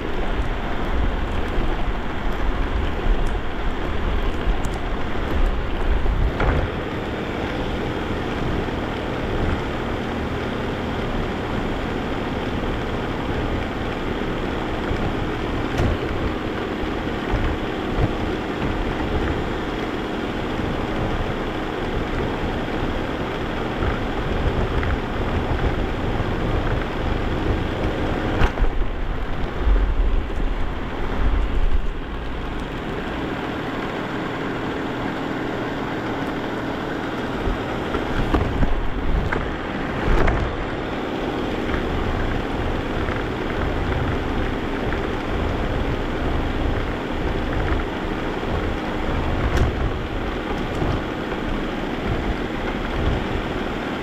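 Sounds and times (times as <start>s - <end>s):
vacuum cleaner running: 0.0s - 54.0s
vacuum bumping on floor: 0.1s - 7.7s.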